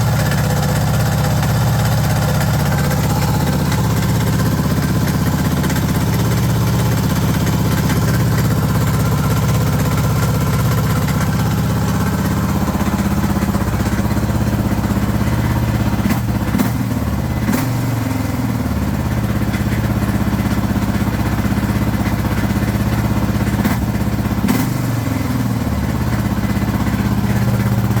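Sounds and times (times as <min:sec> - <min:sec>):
motorcycle throttle blips: 0:00.0 - 0:18.0
motorcycle engine idling: 0:00.0 - 0:28.0.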